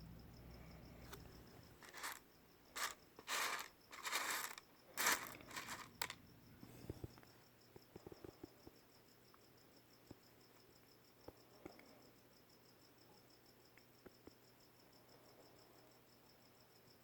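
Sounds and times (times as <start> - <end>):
stones rustling and scraping: 1.8 - 2.2, 2.8 - 6.2.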